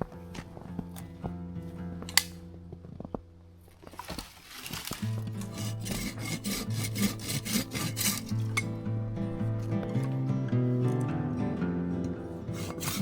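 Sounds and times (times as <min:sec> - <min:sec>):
background music: 0:00.0 - 0:03.6, 0:05.0 - 0:13.0
hand saw cutting wood: 0:04.8 - 0:08.7, 0:12.5 - 0:13.0.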